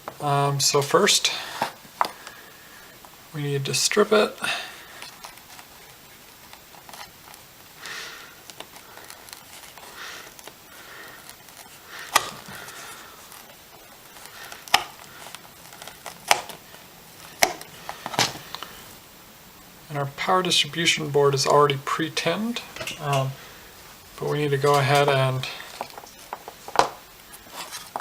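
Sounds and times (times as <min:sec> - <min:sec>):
wire strippers scraping insulation: 0:04.9 - 0:18.8.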